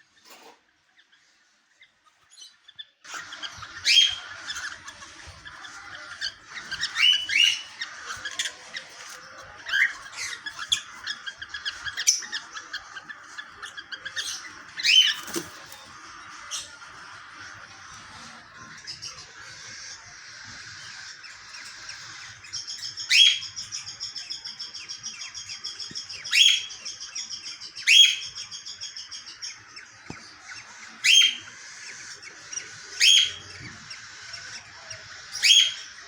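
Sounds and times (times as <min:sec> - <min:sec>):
cockatiels chattering: 0:00.0 - 0:36.0.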